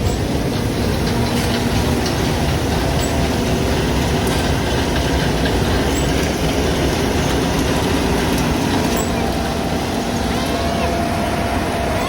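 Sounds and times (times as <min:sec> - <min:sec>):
combine harvester running: 0:00.0 - 0:12.0.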